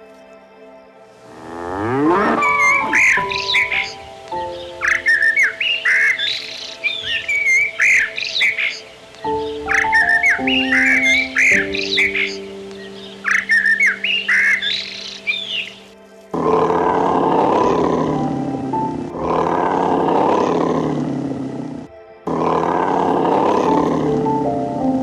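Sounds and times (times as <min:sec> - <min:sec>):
background music with held notes: 0:00.0 - 0:25.0
loud long animal roar: 0:01.3 - 0:03.5, 0:16.3 - 0:24.5
bird squawks: 0:01.8 - 0:16.9.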